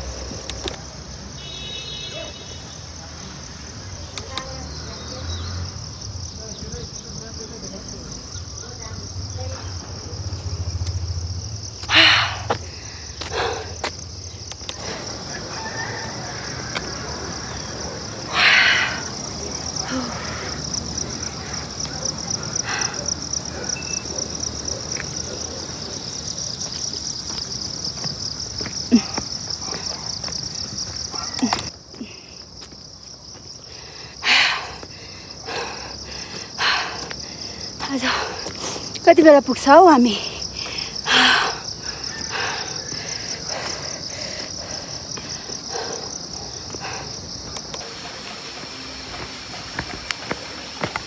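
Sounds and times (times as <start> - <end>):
insects buzzing: 0.0 - 51.0
footsteps scuffing on trail: 26.0 - 31.0, 47.7 - 51.0.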